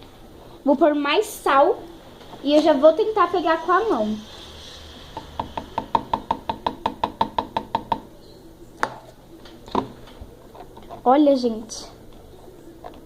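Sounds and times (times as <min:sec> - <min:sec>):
sharp knocks: 0:05.2 - 0:08.0.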